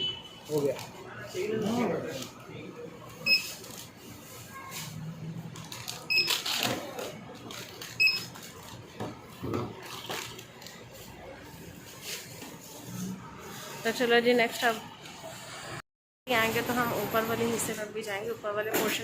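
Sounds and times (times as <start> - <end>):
checkout scanner beeps: 3.1 - 3.8, 5.9 - 6.7, 7.8 - 8.6.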